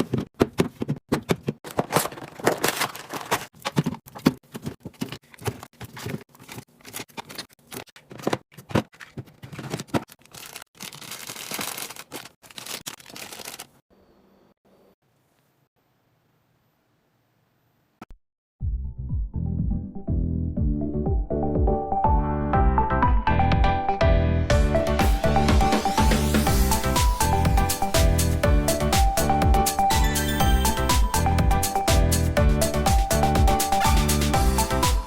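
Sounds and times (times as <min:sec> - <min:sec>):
packages clicking and knocking: 0:00.0 - 0:13.8
plastic wrappers crinkling: 0:01.7 - 0:03.7, 0:08.9 - 0:13.8.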